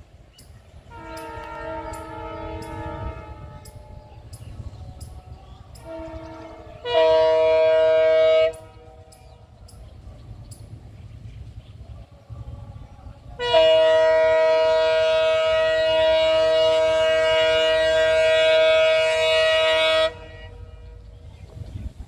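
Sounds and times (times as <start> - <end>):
locomotive horn blasts: 0.8 - 4.4, 5.7 - 9.4, 13.3 - 21.3.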